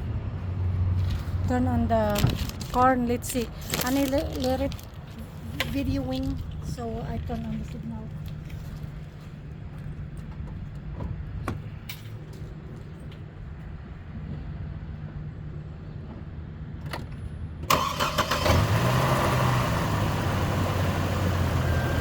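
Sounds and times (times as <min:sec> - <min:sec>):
car engine idling: 0:17.7 - 0:22.0.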